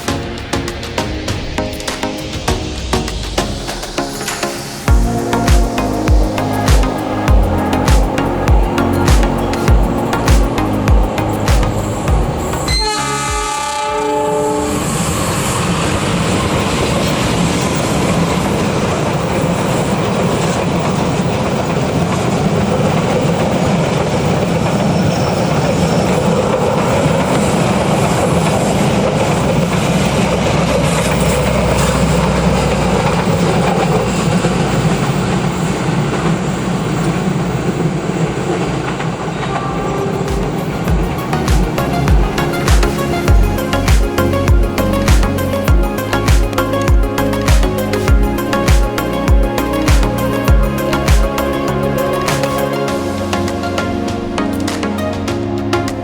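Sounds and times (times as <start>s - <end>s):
passenger train passing at speed: 0.0s - 56.0s
carriages clickety-clack: 15.6s - 56.0s.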